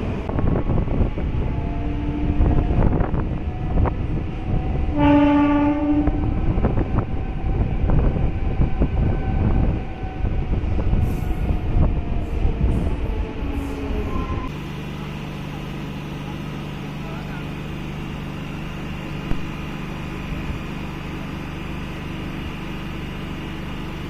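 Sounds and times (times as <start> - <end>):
train rumbling on rails: 0.0 - 24.0
train horn: 4.8 - 6.5.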